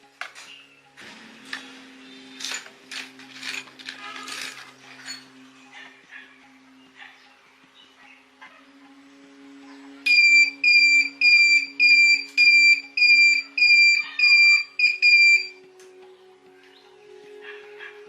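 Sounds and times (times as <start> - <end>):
electronic beeper beeping: 10.1 - 15.6.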